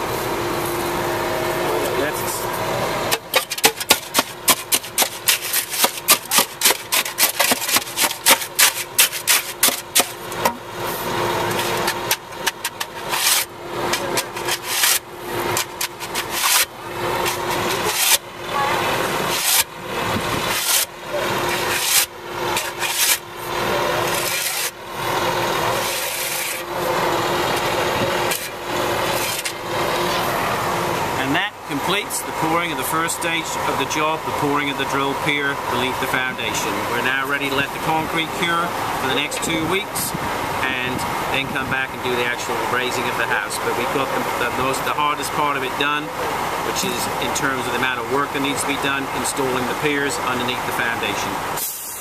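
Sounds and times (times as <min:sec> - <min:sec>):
shovel scraping wet concrete: 0:01.7 - 0:30.3.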